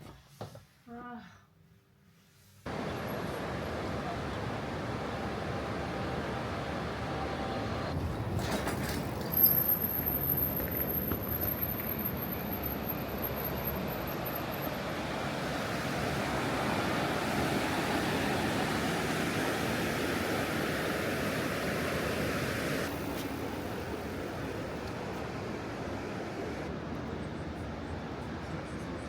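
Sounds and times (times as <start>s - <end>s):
steady rushing noise: 13.8s - 29.0s.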